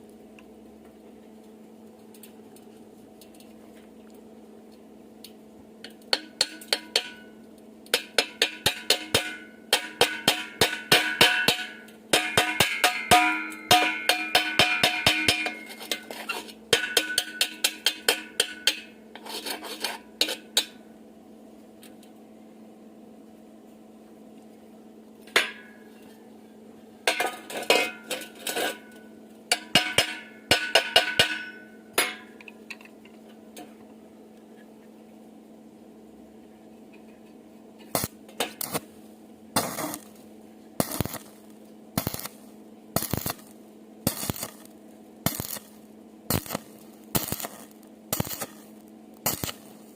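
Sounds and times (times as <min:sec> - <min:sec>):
hammer striking steel: 0:06.1 - 0:07.3, 0:08.0 - 0:19.0, 0:25.3 - 0:25.8, 0:27.0 - 0:32.5, 0:40.8 - 0:42.4, 0:43.0 - 0:43.5, 0:44.1 - 0:44.7, 0:45.3 - 0:49.9.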